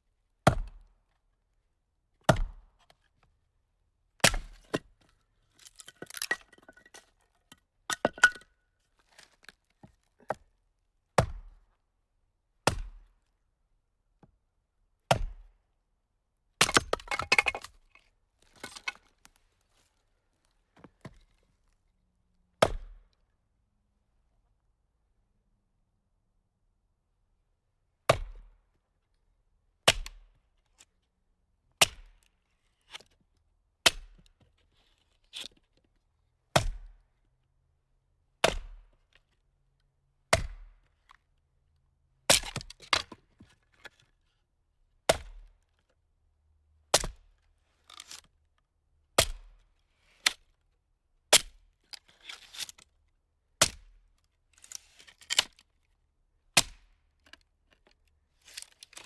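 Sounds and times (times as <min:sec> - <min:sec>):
wood cracking and splintering: 0:05.6 - 0:06.7
firewood splitting strikes: 0:05.6 - 0:07.0, 0:07.9 - 0:08.4, 0:16.6 - 0:17.7.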